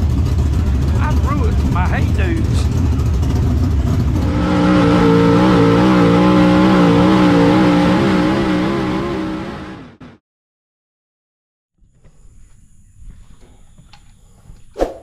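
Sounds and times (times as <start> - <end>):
race car engine at high revs: 0.0 - 10.2.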